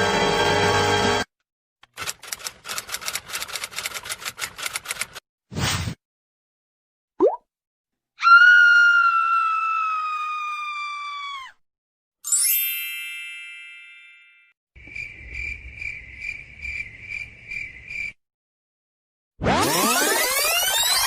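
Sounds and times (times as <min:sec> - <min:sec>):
bright downward chime: 0:12.2 - 0:14.5
pulsing cricket-like chirp: 0:14.8 - 0:18.2.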